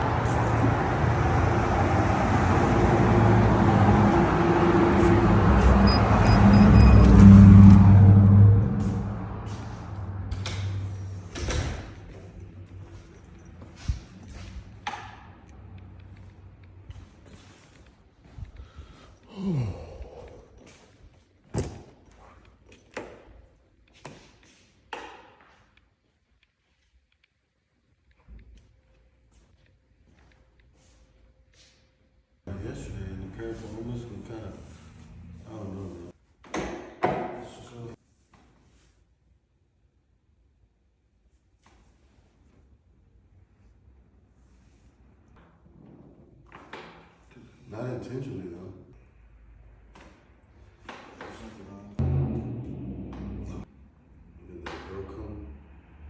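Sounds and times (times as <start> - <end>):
low rumbling noise: 0.0 - 14.8, 52.0 - 53.7
man groaning: 19.3 - 20.6.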